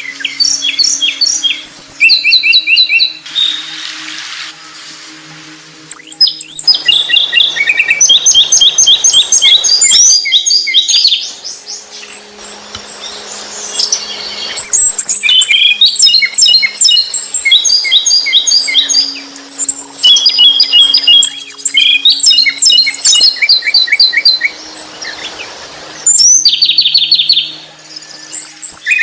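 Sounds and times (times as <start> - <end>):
songbird chirping: 0.0 - 4.2, 5.8 - 29.0.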